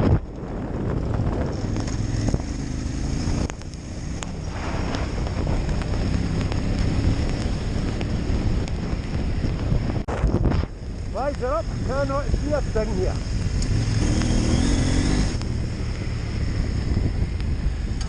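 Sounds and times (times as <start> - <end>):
motorcycle engine running: 0.0 - 18.0
wind buffeting microphone: 0.0 - 18.0
sharp ticks: 3.3 - 9.7, 11.2 - 14.6, 15.3 - 16.0.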